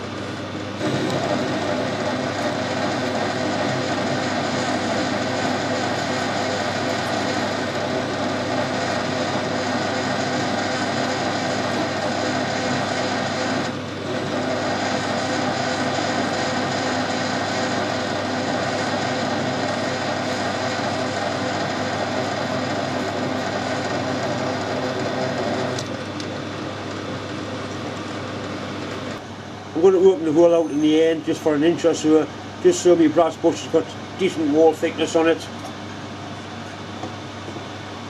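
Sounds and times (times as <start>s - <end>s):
machine tool cutting steel tube: 0.8s - 25.9s.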